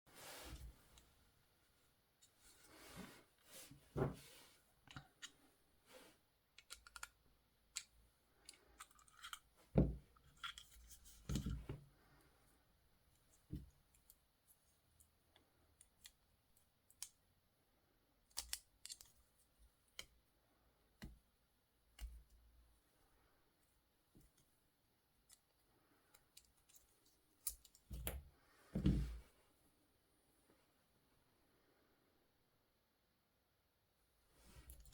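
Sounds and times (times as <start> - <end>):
small plastic clicks and scrapes: 6.6 - 11.6, 18.3 - 19.2.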